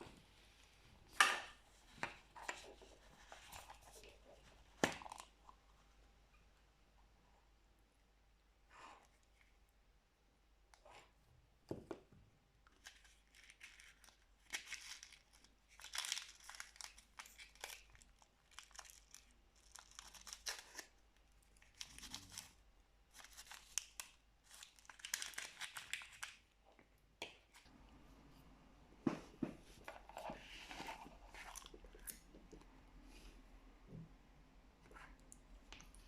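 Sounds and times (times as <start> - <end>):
plastic packaging crinkling and tearing: 12.8 - 26.4.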